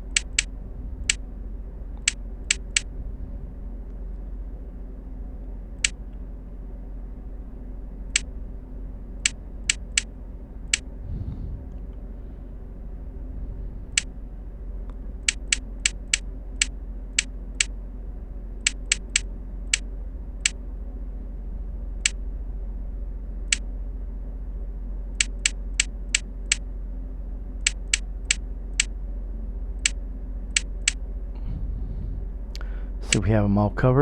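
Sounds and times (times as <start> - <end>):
steady low hum: 0.0 - 34.0
short sharp clicks: 5.8 - 6.0.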